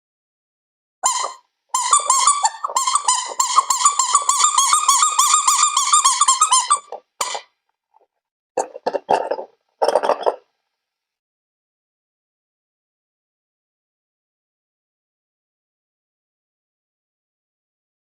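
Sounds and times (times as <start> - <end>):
high-pitched squeaks: 1.0 - 7.4.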